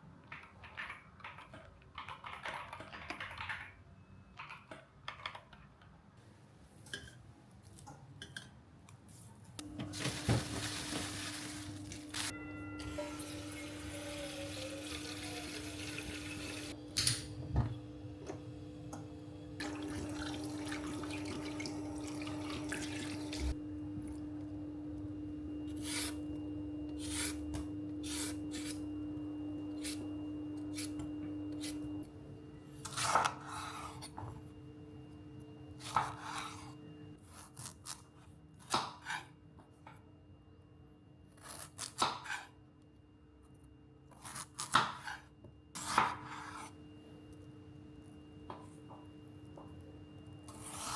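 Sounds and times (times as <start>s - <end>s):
water tap running: 9.8s - 12.1s, 13.0s - 16.8s, 19.6s - 23.6s.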